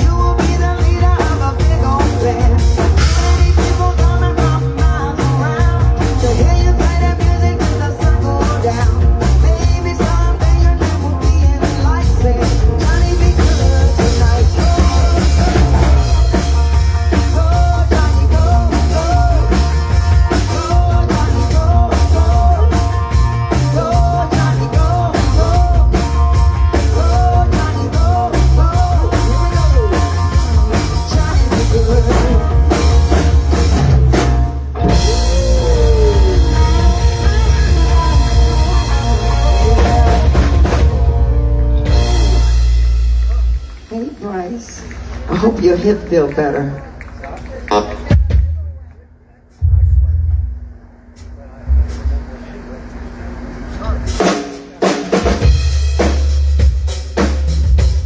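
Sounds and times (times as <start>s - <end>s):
heavy bass line: 0.0s - 43.9s, 49.5s - 54.4s
singing voice or lead instrument: 0.0s - 44.8s
drum kit beat: 0.0s - 45.9s, 47.6s - 58.0s.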